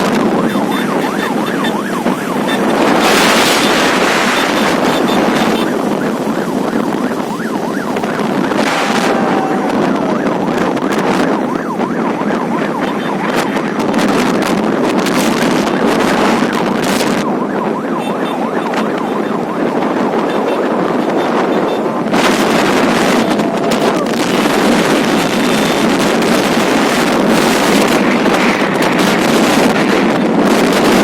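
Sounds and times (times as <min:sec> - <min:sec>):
faint police siren wailing: 0:00.0 - 0:31.0
wind and road noise: 0:00.0 - 0:31.0.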